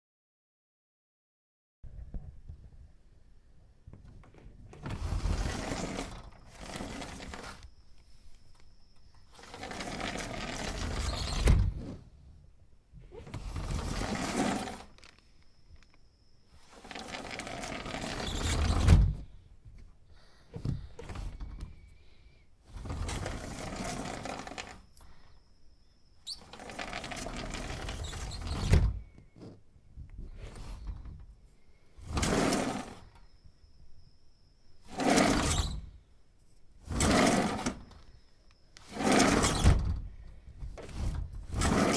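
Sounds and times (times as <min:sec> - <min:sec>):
sliding window scraping along track: 0:04.7 - 0:07.7, 0:09.2 - 0:12.2, 0:13.0 - 0:15.3, 0:16.5 - 0:19.3, 0:21.0 - 0:21.7, 0:22.6 - 0:24.9, 0:26.3 - 0:29.5, 0:30.2 - 0:31.2, 0:31.9 - 0:33.2, 0:34.8 - 0:36.0, 0:36.8 - 0:38.1, 0:38.8 - 0:41.9.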